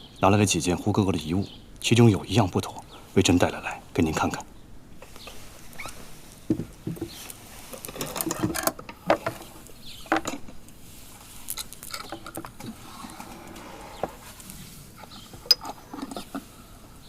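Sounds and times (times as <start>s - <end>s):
soft taps and rustling: 5.0s - 8.0s
small objects clicking and knocking: 11.4s - 12.7s.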